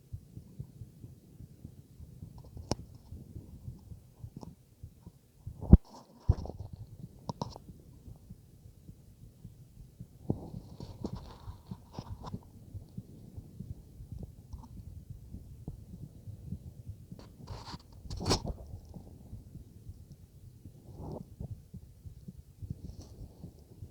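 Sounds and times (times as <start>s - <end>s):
heartbeat through stethoscope: 0.0s - 23.9s
scratchy crackles: 10.4s - 12.4s, 17.2s - 19.0s.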